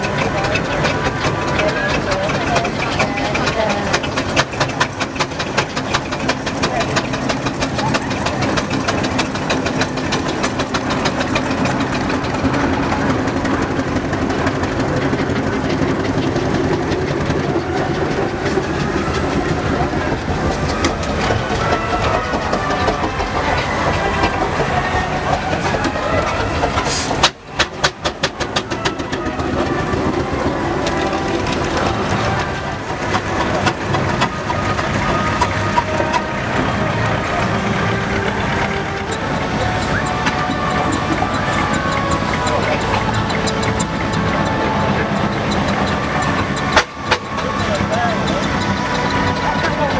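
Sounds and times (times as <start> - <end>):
steam engine chuffing: 0.0 - 49.9
evenly spaced knocks: 39.1 - 49.9
mechanical clanking: 39.1 - 49.9.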